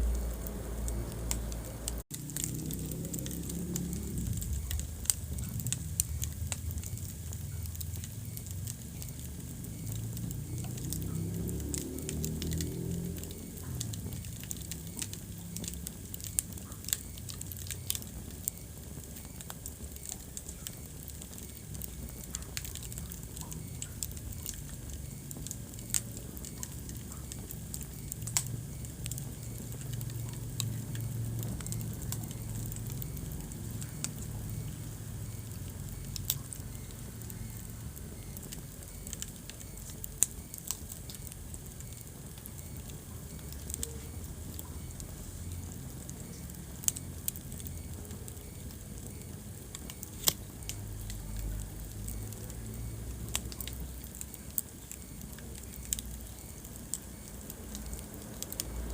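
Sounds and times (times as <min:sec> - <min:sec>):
fire rumbling: 0:00.0 - 0:58.9
logs crackling and popping: 0:00.0 - 0:58.9.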